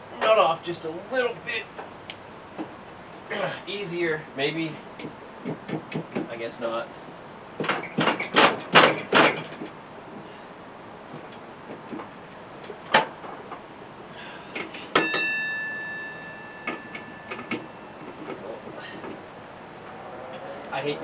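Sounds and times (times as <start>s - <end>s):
ringing metal clank: 14.6s - 19.0s
wrench clicks and knocks: 16.6s - 18.4s.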